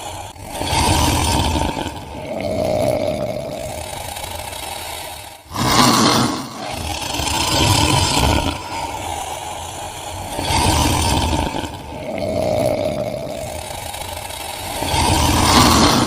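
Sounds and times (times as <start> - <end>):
low monster growl: 0.0 - 16.0.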